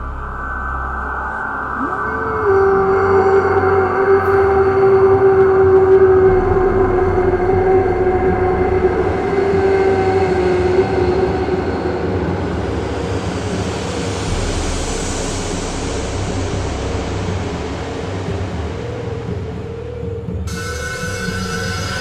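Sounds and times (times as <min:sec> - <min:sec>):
low rumble: 0:00.0 - 0:22.0
held tone: 0:20.5 - 0:22.0.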